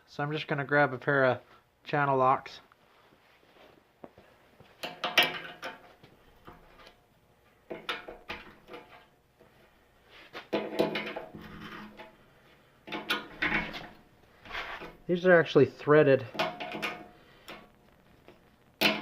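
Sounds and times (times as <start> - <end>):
metal hand tools clanking: 12.9 - 14.0, 16.2 - 17.6.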